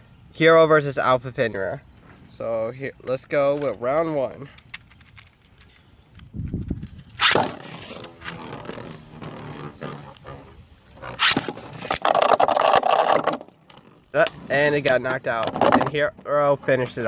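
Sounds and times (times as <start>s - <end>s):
spinning top launch rip: 7.1s - 13.5s
spinning tops sharp hit: 7.2s - 8.3s
spinning tops grinding scrape: 7.2s - 14.5s.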